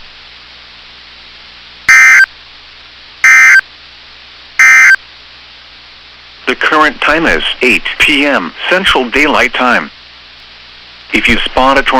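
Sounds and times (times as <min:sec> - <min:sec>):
digital data tone bursts: 0:01.9 - 0:02.3, 0:03.2 - 0:03.6, 0:04.6 - 0:05.0
radio hiss: 0:06.4 - 0:10.0, 0:11.0 - 0:11.9.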